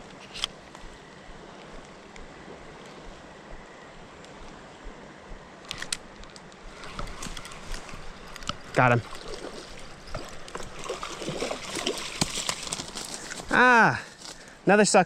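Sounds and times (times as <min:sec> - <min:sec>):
sharp clicks: 0:05.6 - 0:08.8
river water rushing: 0:06.7 - 0:12.8.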